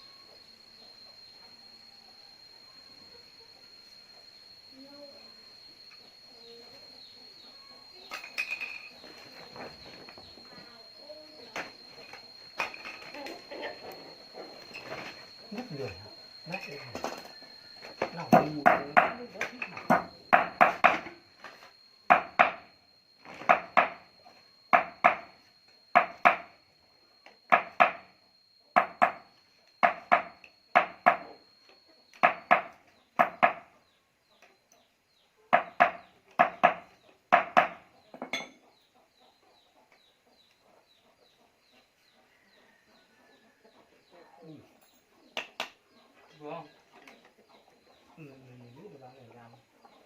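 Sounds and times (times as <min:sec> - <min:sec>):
faint high steady whine: 0:00.0 - 0:50.0
sharp knocks: 0:18.0 - 0:21.2, 0:22.1 - 0:22.7, 0:23.4 - 0:24.0, 0:24.7 - 0:25.3, 0:25.9 - 0:26.5, 0:27.5 - 0:28.1, 0:28.8 - 0:31.3, 0:32.2 - 0:33.6, 0:35.5 - 0:37.8.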